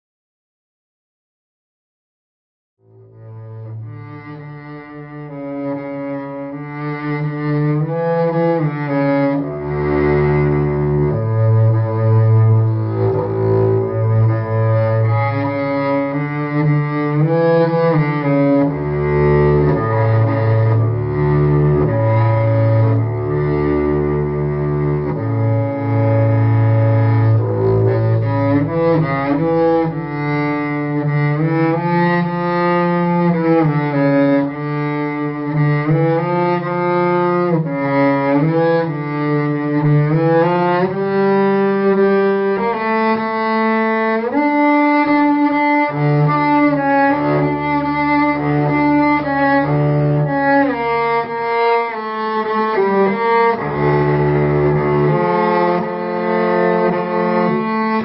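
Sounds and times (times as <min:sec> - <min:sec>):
bowed cello melody: 0:02.8 - 0:58.0
sustained low bass notes: 0:06.6 - 0:39.2.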